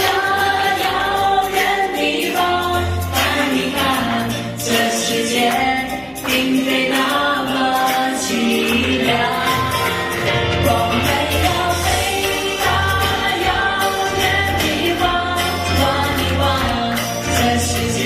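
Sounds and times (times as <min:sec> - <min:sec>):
person singing: 0:00.0 - 0:18.0
steady bass line: 0:07.0 - 0:18.0.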